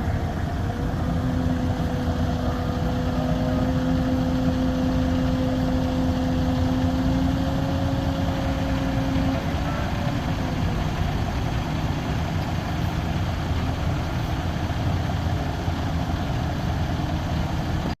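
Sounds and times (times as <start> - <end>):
steady hum: 0.0 - 17.1
diesel truck engine running: 0.0 - 18.0.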